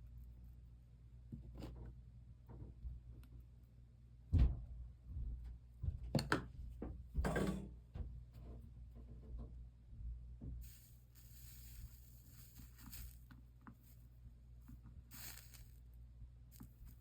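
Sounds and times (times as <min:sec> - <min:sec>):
objects knocking on work table: 0:06.1 - 0:08.1.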